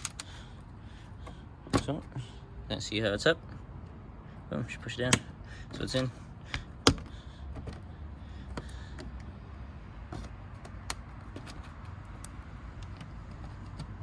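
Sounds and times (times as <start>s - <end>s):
plastic clips clicking: 10.6s - 13.0s.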